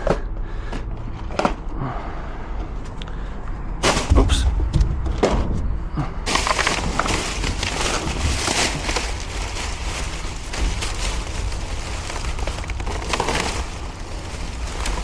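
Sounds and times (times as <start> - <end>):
plastic bags rustling: 3.8 - 4.4, 6.3 - 15.0.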